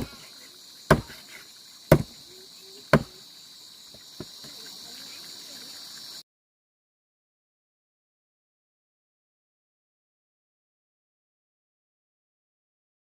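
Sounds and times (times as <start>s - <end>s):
crickets chirping: 0.0s - 6.3s
sharp knocks: 0.9s - 1.2s, 1.9s - 2.1s.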